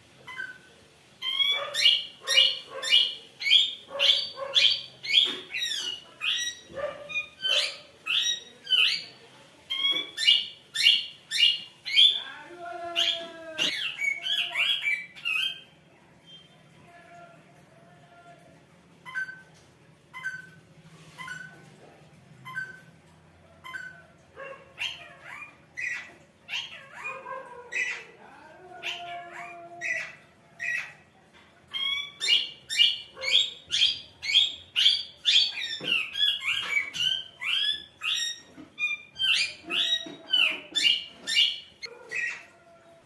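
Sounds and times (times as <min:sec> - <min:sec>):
parrot whistling and chirping: 0:00.3 - 0:09.1, 0:13.0 - 0:16.6, 0:19.0 - 0:21.7, 0:22.4 - 0:23.0, 0:23.6 - 0:24.1, 0:31.7 - 0:42.4.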